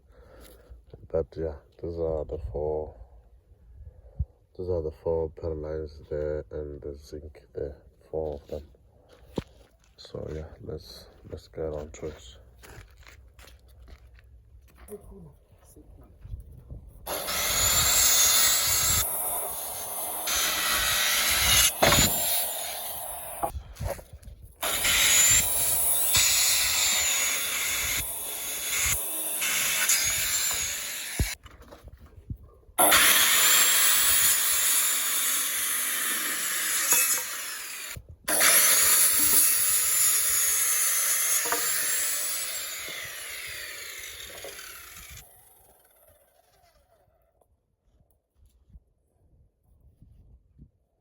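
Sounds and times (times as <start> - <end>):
power tool running: 17.1 - 23.5, 24.6 - 31.4, 32.8 - 46.6.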